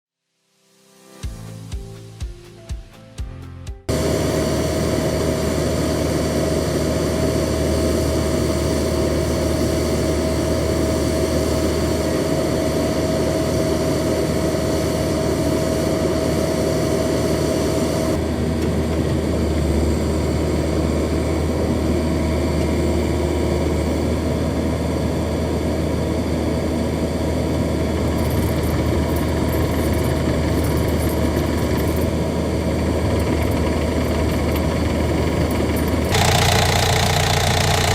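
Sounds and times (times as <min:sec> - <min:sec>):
steady whine: 0:03.9 - 0:37.9
diesel engine idling: 0:32.9 - 0:37.9.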